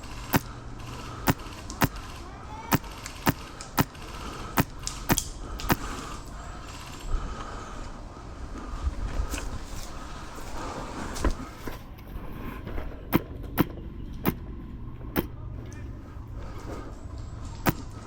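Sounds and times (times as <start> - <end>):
airsoft rifle shots: 0.0 - 7.0, 15.1 - 15.4, 17.6 - 18.0.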